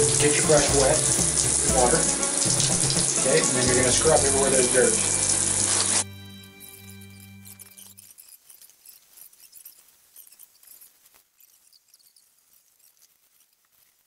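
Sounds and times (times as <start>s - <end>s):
brush scrubbing plastic: 6.6s - 14.0s.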